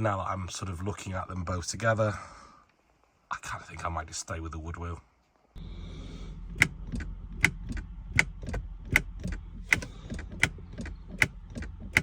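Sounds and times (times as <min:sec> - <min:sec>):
gear selector clicking: 0:06.4 - 0:12.0.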